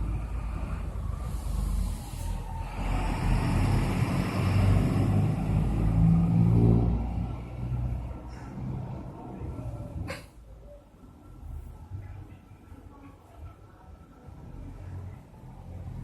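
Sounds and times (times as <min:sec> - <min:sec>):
vehicle passing by: 0:00.0 - 0:10.1.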